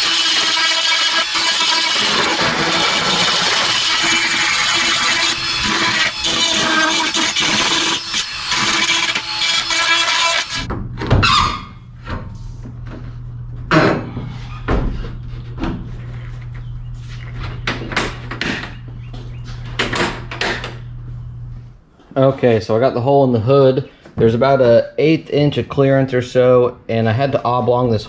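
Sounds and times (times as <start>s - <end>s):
steady low hum: 2.0s - 23.0s.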